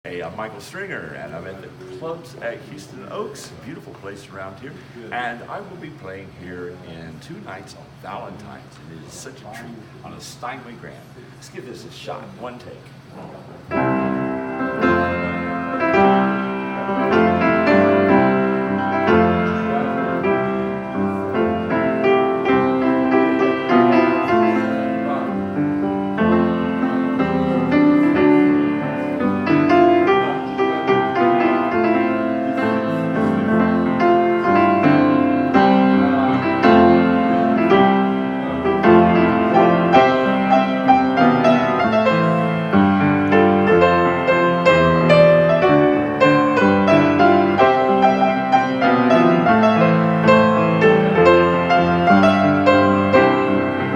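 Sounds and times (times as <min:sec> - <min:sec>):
solo grand piano piece: 0:13.6 - 0:53.9.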